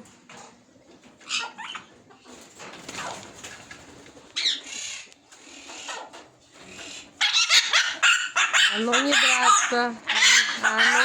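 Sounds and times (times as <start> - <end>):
parrots squawking: 1.2 - 1.9, 4.4 - 6.1, 6.7 - 11.0.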